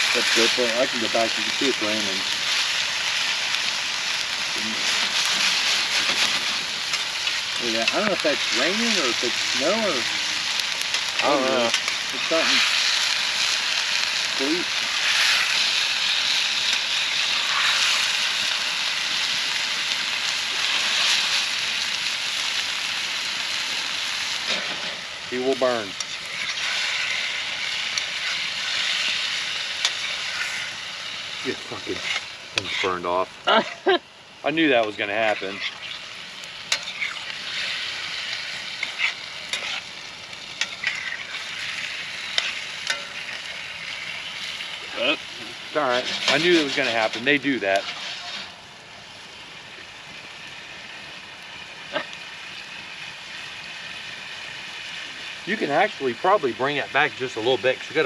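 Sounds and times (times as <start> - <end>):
chicken sizzling in a pan: 0.0 - 58.0
utensil scraping against a pan: 31.9 - 33.8, 38.8 - 39.9, 45.9 - 48.6.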